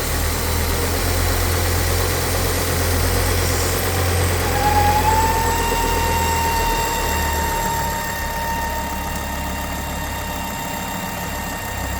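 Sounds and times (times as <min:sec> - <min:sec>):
car engine idling: 0:00.0 - 0:11.9
thin high whine: 0:03.5 - 0:11.9.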